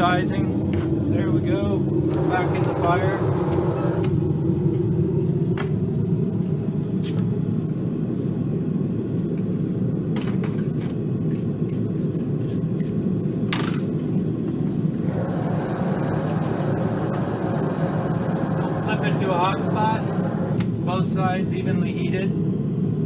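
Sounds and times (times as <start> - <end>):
forge rumbling: 0.0 - 5.5, 15.0 - 20.9.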